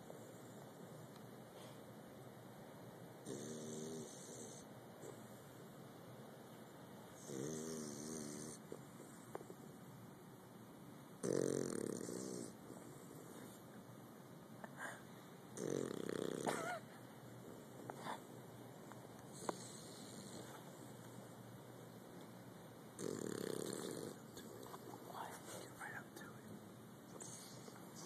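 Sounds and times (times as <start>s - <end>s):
dog snoring: 3.2s - 5.3s, 7.1s - 9.8s, 11.2s - 13.6s, 15.5s - 16.8s, 19.3s - 21.2s, 23.0s - 25.2s, 26.5s - 28.0s.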